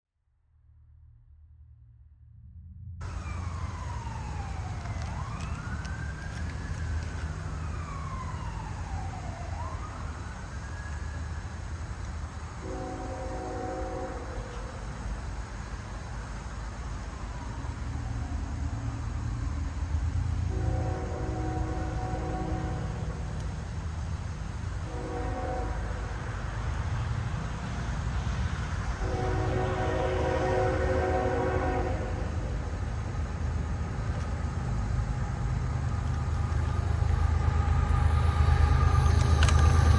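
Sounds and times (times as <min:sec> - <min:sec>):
low rumble: 0:00.5 - 0:06.2
passing train rumble: 0:01.2 - 0:39.9
emergency siren wailing: 0:03.0 - 0:11.8, 0:29.0 - 0:39.9
locomotive horn blasts: 0:12.6 - 0:14.7, 0:20.5 - 0:23.1, 0:24.9 - 0:26.2, 0:29.0 - 0:32.4.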